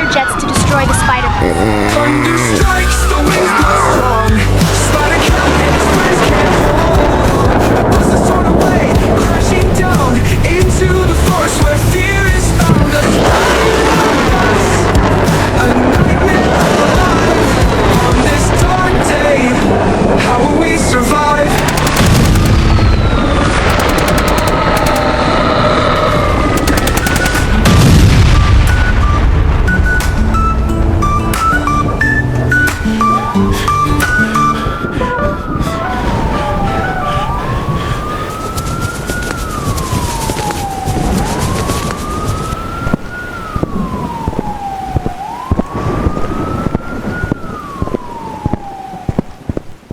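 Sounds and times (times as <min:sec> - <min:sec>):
background music: 0:00.0 - 0:49.1
heavy low rumble: 0:00.0 - 0:49.9
wailing siren: 0:00.0 - 0:49.9
sharp cracks: 0:01.9 - 0:31.7
machine-gun fire: 0:21.5 - 0:25.2, 0:26.6 - 0:28.5.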